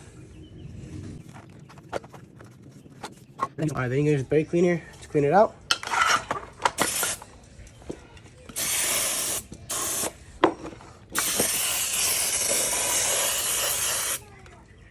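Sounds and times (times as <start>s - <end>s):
aerosol spray bursts: 6.8s - 7.2s, 8.6s - 10.2s, 11.2s - 14.2s.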